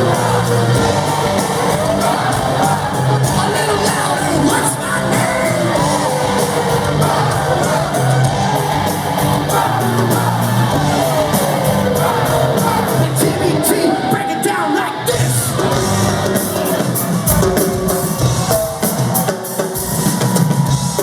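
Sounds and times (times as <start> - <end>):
crowd shouting and whooping: 0.0 - 21.0
live rock music: 0.0 - 21.0.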